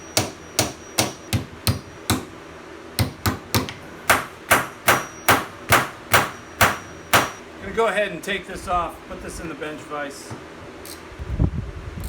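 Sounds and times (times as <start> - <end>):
hammer striking steel punch: 0.0 - 2.4, 3.0 - 7.4.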